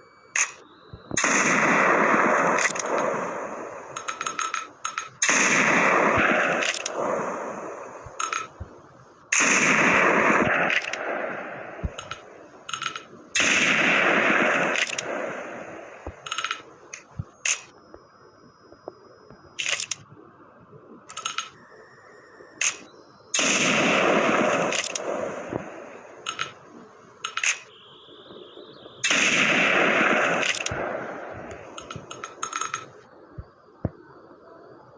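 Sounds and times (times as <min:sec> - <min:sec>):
short sharp clicks: 0:00.4 - 0:01.6, 0:02.6 - 0:03.1, 0:03.9 - 0:07.0, 0:14.7 - 0:15.2, 0:16.0 - 0:17.8, 0:19.6 - 0:20.0, 0:22.6 - 0:23.6, 0:24.6 - 0:25.6, 0:26.2 - 0:27.7, 0:30.2 - 0:33.1
loud gunshots: 0:01.2 - 0:08.7, 0:09.3 - 0:16.6, 0:23.4 - 0:26.6, 0:29.0 - 0:32.9.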